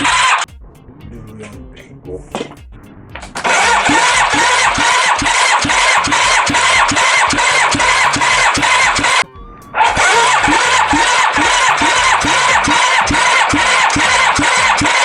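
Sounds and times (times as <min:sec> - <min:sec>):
starter motor cranking engine: 0:00.0 - 0:00.5, 0:03.2 - 0:09.2, 0:09.8 - 0:15.0.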